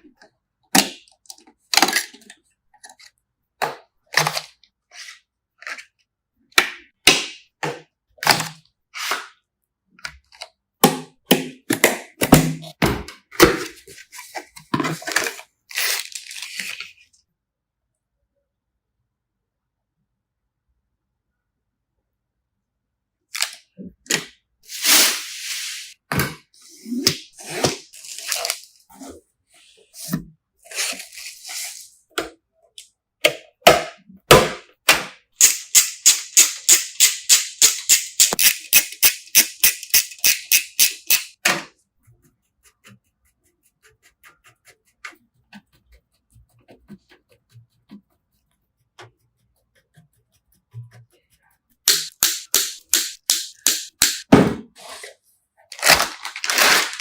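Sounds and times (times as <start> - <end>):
computer parts clicking and scraping: 35.4 - 41.4.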